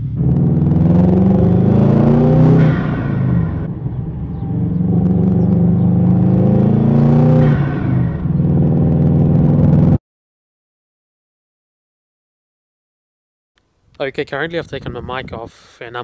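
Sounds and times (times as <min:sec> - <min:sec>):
car engine revving: 0:00.0 - 0:10.0.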